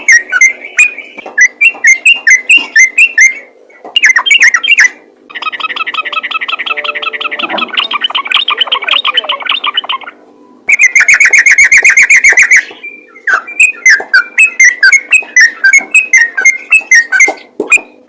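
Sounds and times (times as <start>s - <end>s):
bulbul singing and trilling: 0.0s - 18.0s.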